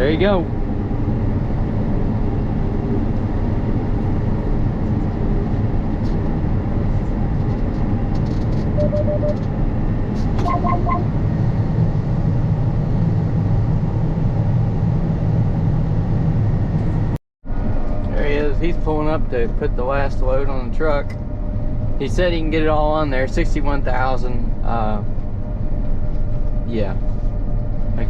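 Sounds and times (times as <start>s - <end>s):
combine harvester droning: 8.7s - 28.0s
quick beeps: 8.8s - 9.4s, 10.4s - 11.1s
short electronic tone: 8.8s - 9.4s, 10.4s - 11.2s.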